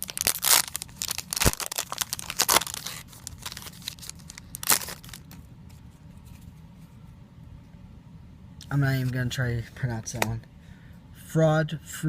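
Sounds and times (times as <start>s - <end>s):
foil wrapper tearing and crinkling: 0.0s - 5.4s.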